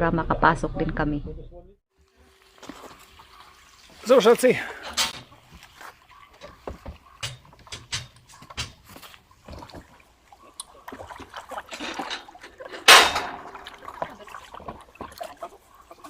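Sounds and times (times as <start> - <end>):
water sloshing: 2.0 - 16.0
kayak and paddle knocking: 5.1 - 15.5
loud splash: 12.9 - 14.6.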